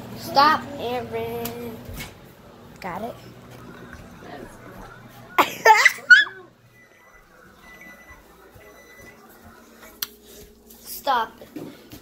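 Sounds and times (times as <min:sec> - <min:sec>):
microwave oven beeping: 0:03.3 - 0:10.7.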